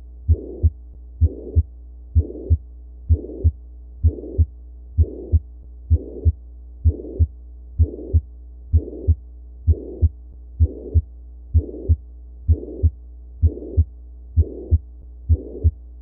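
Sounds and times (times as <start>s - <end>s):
steady low hum: 0.0s - 16.0s
heartbeat with murmur: 0.2s - 15.8s.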